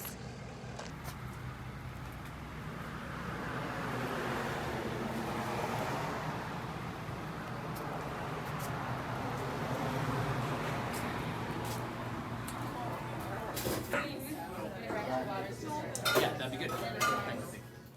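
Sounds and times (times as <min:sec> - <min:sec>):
low engine hum: 0:00.0 - 0:13.6
passing vehicle: 0:00.0 - 0:14.7.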